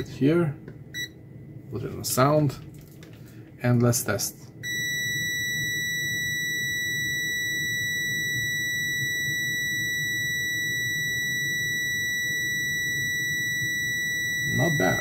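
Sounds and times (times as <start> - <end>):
multimeter continuity beep: 0.9 - 1.2, 4.6 - 15.0.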